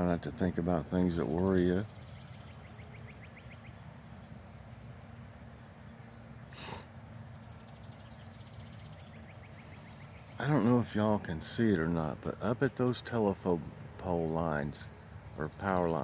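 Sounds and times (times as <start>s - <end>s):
songbirds singing: 0.0s - 16.0s
rapid bird trills: 1.2s - 12.7s.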